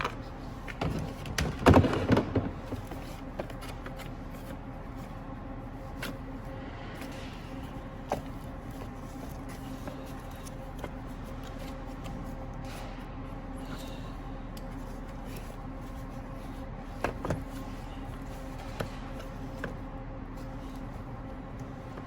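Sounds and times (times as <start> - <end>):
plastic parts clicking and knocking: 0.0 - 4.1
steady mechanical hum: 0.0 - 22.0.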